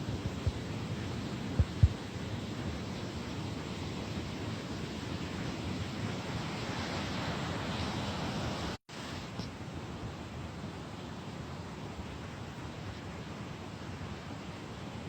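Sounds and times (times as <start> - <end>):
wind buffeting microphone: 0.0 - 0.9, 1.5 - 2.0.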